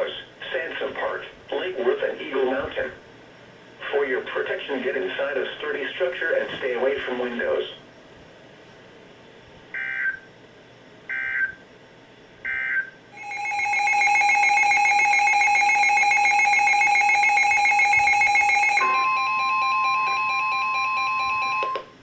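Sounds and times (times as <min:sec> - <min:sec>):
two-tone attention signal: 0:12.5 - 0:21.9.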